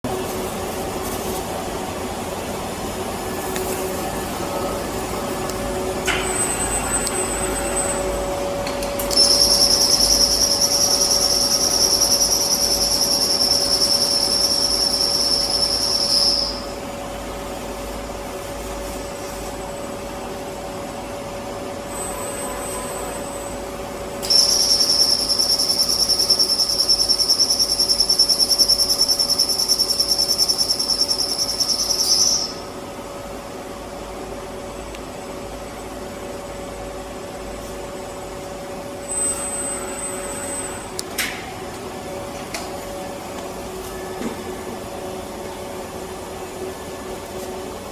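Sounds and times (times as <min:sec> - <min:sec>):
welding equipment hum: 0:00.1 - 0:21.4, 0:23.2 - 0:32.8
welding arc whining: 0:09.0 - 0:16.8, 0:24.2 - 0:32.7.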